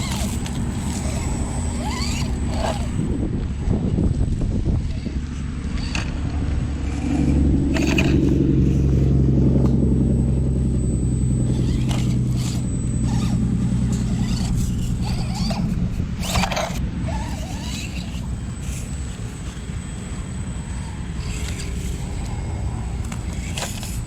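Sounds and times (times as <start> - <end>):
tyres scraping on rock: 0.0 - 3.1, 6.9 - 8.5, 11.5 - 24.0
toy car motor hum: 0.0 - 3.3, 4.3 - 24.0.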